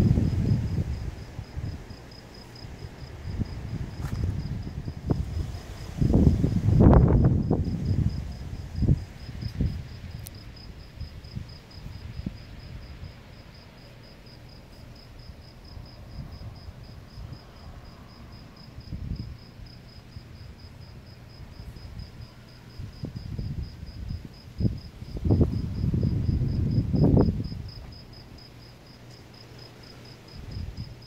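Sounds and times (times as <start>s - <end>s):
cricket chirping: 0.0s - 31.0s.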